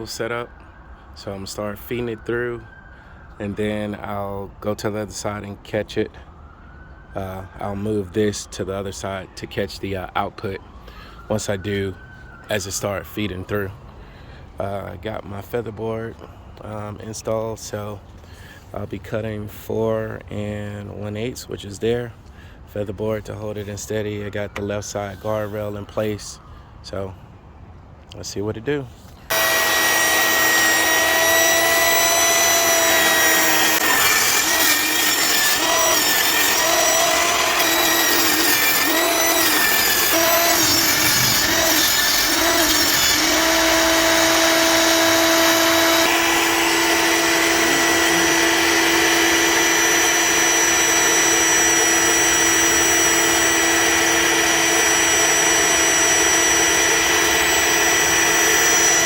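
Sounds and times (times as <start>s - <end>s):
table saw ripping board: 29.3s - 59.0s.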